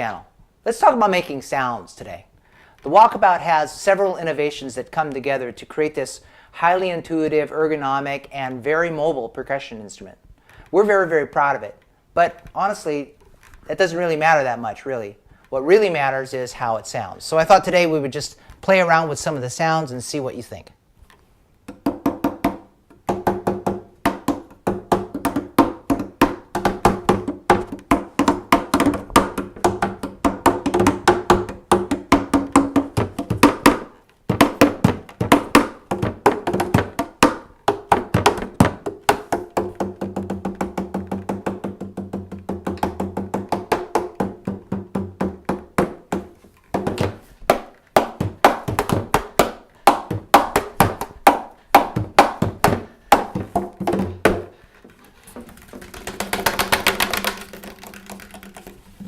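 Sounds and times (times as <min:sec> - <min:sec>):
hand drum slaps and tones: 0:21.7 - 0:54.5, 0:55.4 - 0:59.0.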